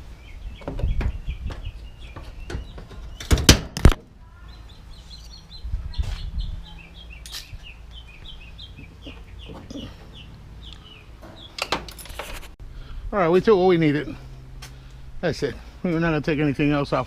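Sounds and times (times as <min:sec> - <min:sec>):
bird chirping rapidly: 0:00.1 - 0:03.4, 0:04.3 - 0:11.9.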